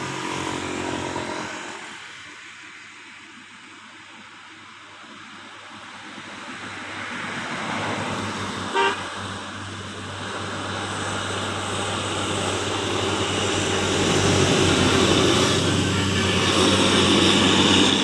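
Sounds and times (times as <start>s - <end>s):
bus engine and tyre noise: 0.0s - 18.0s
bus horn toot: 8.7s - 9.1s.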